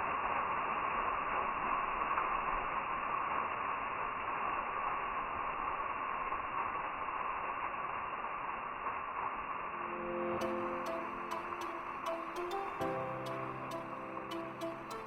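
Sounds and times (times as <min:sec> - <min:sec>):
muffled waterfall rushing: 0:10.4 - 0:15.0.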